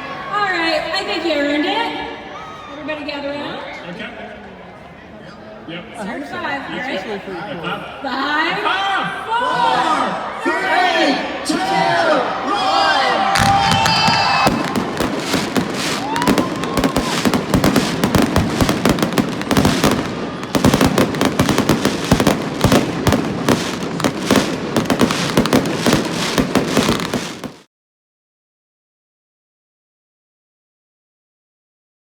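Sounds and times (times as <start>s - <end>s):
fireworks bangs and crackles: 13.3s - 27.7s.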